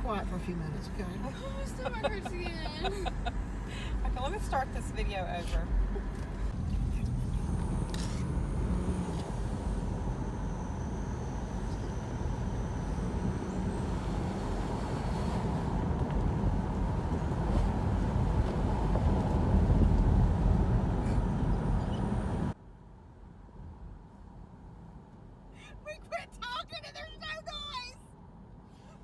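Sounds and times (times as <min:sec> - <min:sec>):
road and engine rumble: 0:00.0 - 0:29.0.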